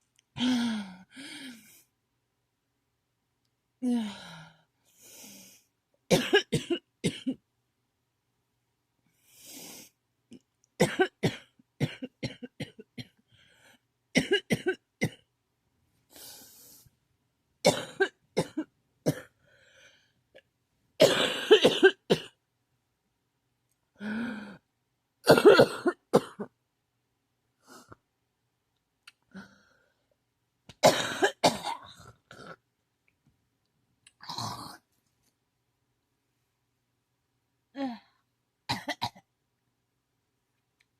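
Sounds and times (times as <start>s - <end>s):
person coughing: 6.1s - 7.4s, 10.8s - 13.1s, 14.2s - 15.2s, 17.7s - 19.3s, 21.0s - 22.4s, 25.3s - 26.5s, 30.8s - 32.6s, 38.7s - 39.2s.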